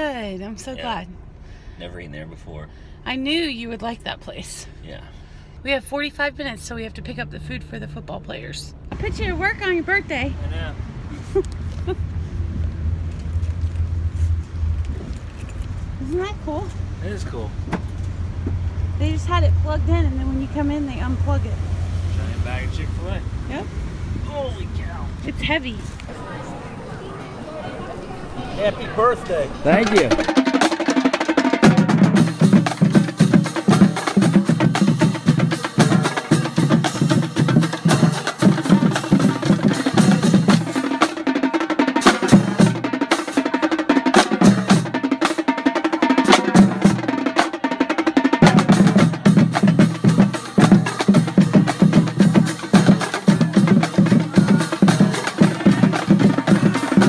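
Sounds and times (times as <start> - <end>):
drum percussion music: 25.4 - 57.0.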